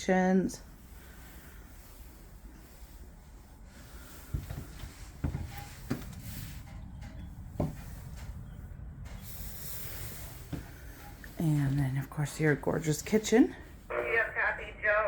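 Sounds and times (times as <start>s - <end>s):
low steady rumble: 0.0s - 15.0s
soft knocks and thumps: 4.3s - 9.3s.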